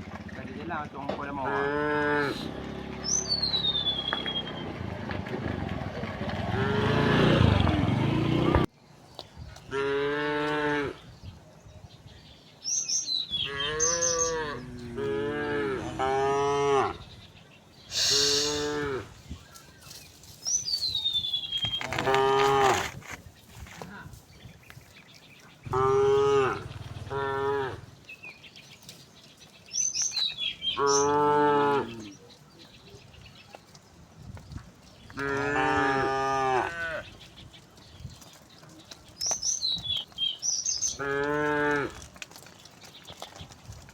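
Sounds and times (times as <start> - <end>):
cows mooing: 1.4 - 4.8, 6.3 - 8.7, 13.4 - 17.0, 18.0 - 19.2, 21.8 - 22.8, 25.7 - 28.0, 30.7 - 32.2, 35.2 - 37.1, 40.9 - 42.0
bird chirps: 3.0 - 4.8, 11.2 - 14.8, 19.3 - 22.2.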